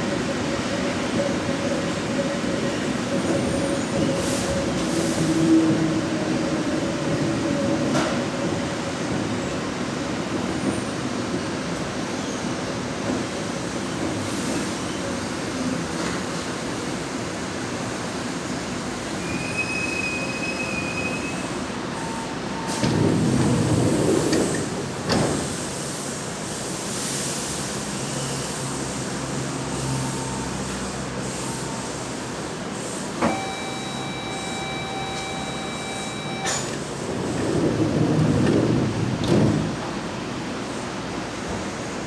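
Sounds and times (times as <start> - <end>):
electric train rumbling: 0.0 - 42.0
steady high tone: 33.2 - 36.8
wheel squeal: 33.2 - 38.3.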